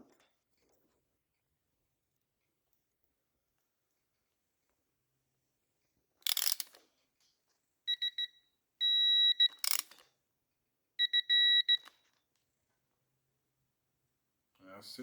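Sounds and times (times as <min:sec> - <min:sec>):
torque wrench beeping: 0:06.2 - 0:06.8, 0:07.9 - 0:10.0, 0:11.0 - 0:11.9.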